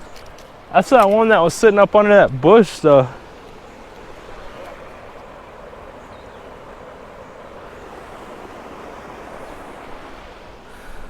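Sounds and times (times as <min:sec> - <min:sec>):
stream water running: 0:00.0 - 0:11.0.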